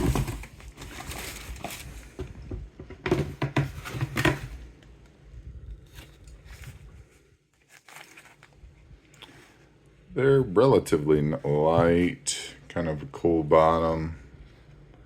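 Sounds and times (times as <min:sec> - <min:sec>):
shoebox rustling and crinkling: 0:00.0 - 0:02.5, 0:03.2 - 0:04.7, 0:07.6 - 0:08.6.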